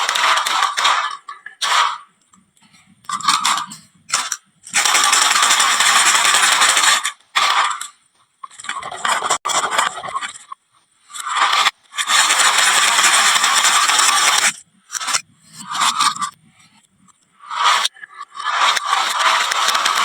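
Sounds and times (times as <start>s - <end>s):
marbles rattling down wooden slope: 3.1s - 7.9s, 11.3s - 15.2s, 17.6s - 20.0s.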